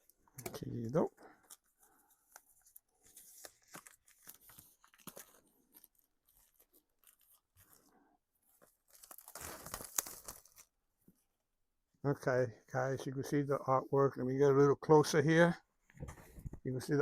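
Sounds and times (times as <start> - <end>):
packaging crinkling: 8.8 - 10.7
packaging tearing: 8.9 - 10.7.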